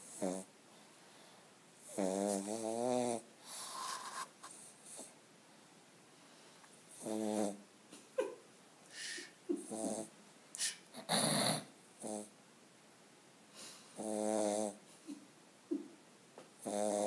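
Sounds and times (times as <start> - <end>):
dog snoring and snorting: 0.0 - 0.5, 1.8 - 5.2, 6.9 - 7.7, 9.6 - 10.1, 10.9 - 12.4, 14.0 - 14.8, 16.6 - 17.0.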